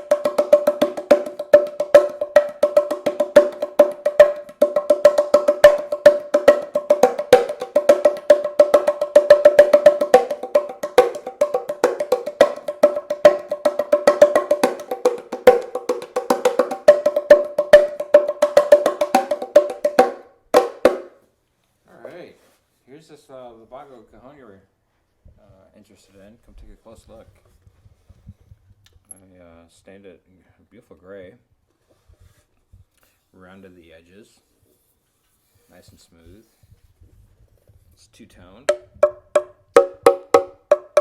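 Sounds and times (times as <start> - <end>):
wooden cajon strikes: 0.0 - 21.2, 38.7 - 41.0.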